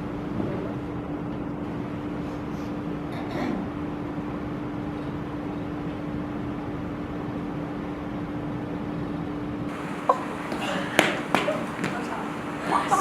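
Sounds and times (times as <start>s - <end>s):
machine hum and hiss: 3.8s - 13.0s
low constant tone: 9.7s - 13.0s.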